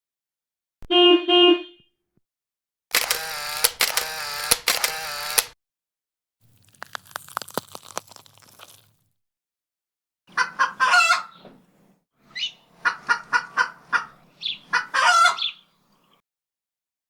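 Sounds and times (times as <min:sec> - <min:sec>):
chicken clucking: 0:10.3 - 0:11.4, 0:12.8 - 0:15.6
chicken squawking: 0:10.3 - 0:11.4, 0:12.4 - 0:15.6.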